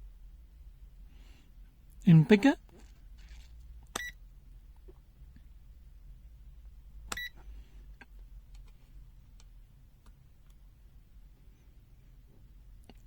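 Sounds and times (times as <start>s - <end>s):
multimeter beep: 4.0s - 4.2s, 7.1s - 7.4s.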